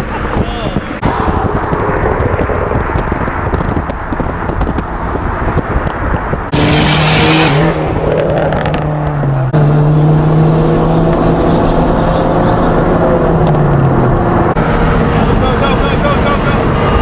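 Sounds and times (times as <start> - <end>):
rushing noise: 1.0 - 9.5.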